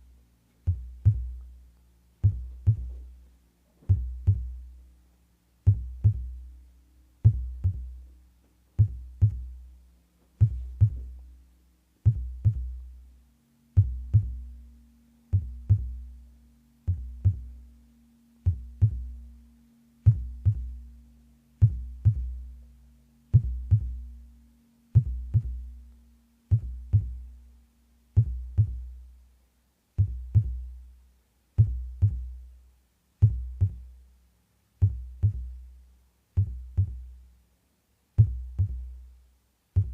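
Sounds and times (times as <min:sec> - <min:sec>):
faint steady hum: 0:00.0 - 0:39.9
heartbeat thuds: 0:00.7 - 0:01.4, 0:02.2 - 0:03.1, 0:03.8 - 0:04.7, 0:05.6 - 0:06.4, 0:07.2 - 0:08.0, 0:08.8 - 0:09.6, 0:10.4 - 0:11.2, 0:12.0 - 0:12.8, 0:13.8 - 0:14.4, 0:15.3 - 0:16.0, 0:16.9 - 0:17.6, 0:18.4 - 0:19.2, 0:20.1 - 0:20.8, 0:21.6 - 0:22.4, 0:23.3 - 0:24.0, 0:25.0 - 0:25.7, 0:26.5 - 0:27.3, 0:28.2 - 0:28.9, 0:30.0 - 0:30.6, 0:31.6 - 0:32.3, 0:33.2 - 0:33.9, 0:34.8 - 0:35.6, 0:36.4 - 0:37.1, 0:38.2 - 0:38.9.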